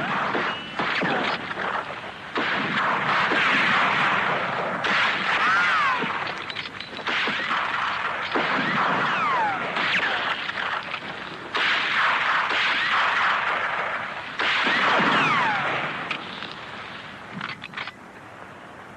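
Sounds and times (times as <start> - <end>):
gunshots in dense bursts: 0.0 - 17.8
whining ricochets: 4.9 - 6.3, 7.3 - 10.8.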